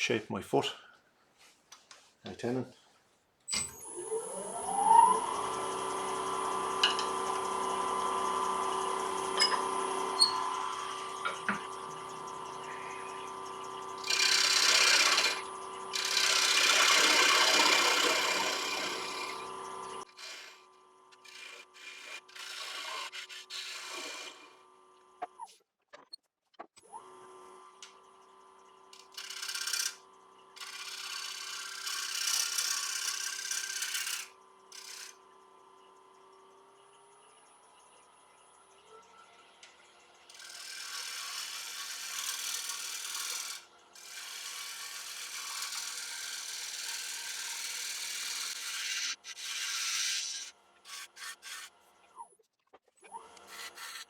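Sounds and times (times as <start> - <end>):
wood lathe motor whine: 3.7 - 25.3, 26.9 - 52.0
turning tool scraping wood: 5.7 - 24.6, 29.0 - 35.2, 40.3 - 51.8, 53.1 - 54.0.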